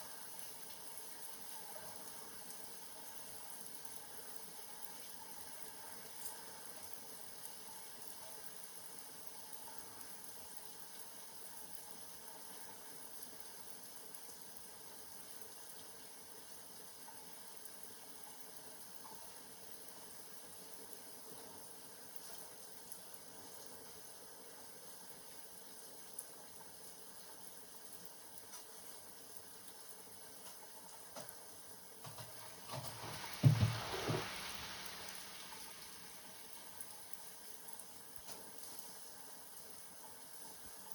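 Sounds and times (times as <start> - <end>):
thumps and knocking: 32.0 - 35.2
water hissing: 32.1 - 36.7.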